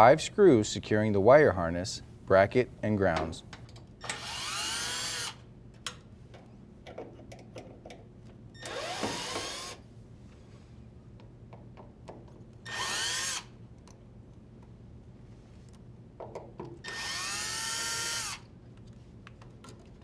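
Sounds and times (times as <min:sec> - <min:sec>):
drill driver motor whine: 0:04.0 - 0:05.4, 0:08.6 - 0:09.8, 0:12.7 - 0:13.5, 0:16.9 - 0:18.4.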